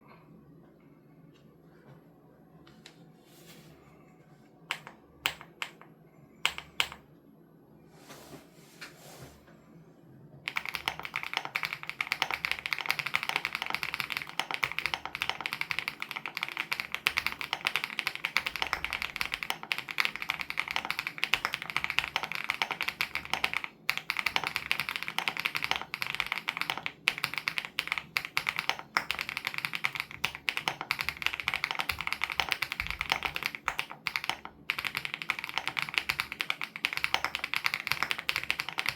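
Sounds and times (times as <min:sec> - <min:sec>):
mechanical keyboard typing: 0:04.7 - 0:07.0, 0:10.5 - 0:38.9.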